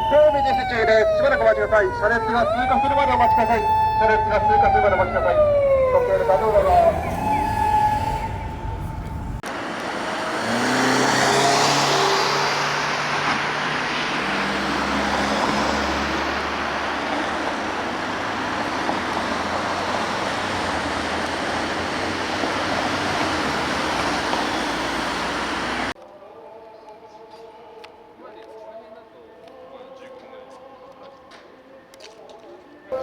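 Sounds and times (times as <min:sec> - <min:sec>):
cars passing on a road: 0:00.0 - 0:26.0.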